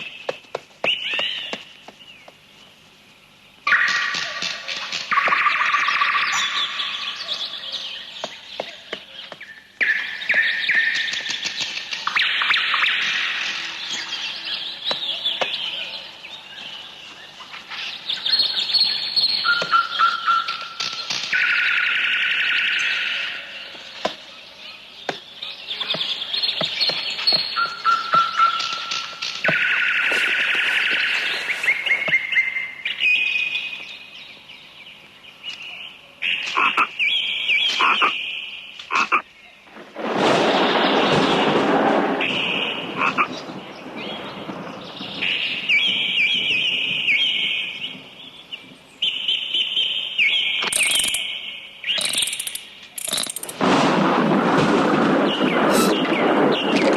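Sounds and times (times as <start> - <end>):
birds whistling: 0.0 - 2.3, 3.7 - 24.1, 25.0 - 34.8, 42.2 - 53.5, 55.2 - 56.9
sharp bird clicks: 50.6 - 51.3, 51.9 - 53.6
bird rapid trill: 50.6 - 53.6.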